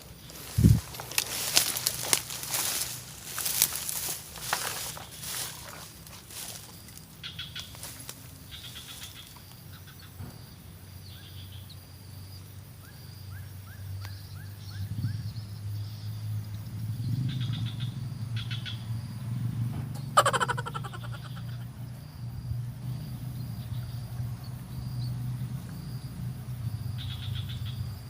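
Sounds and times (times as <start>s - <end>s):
buzzy bird trills: 0.3s - 10.0s, 20.0s - 21.6s.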